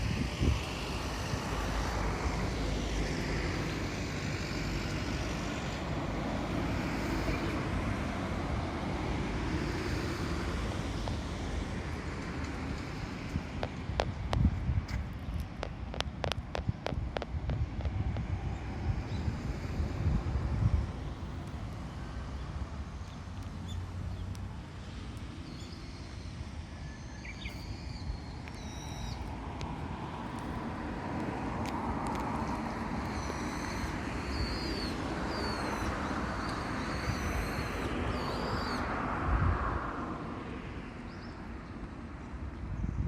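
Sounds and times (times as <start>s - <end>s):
road traffic rumble: 0.0s - 43.0s
starlings chirping: 25.4s - 29.3s, 33.0s - 38.9s.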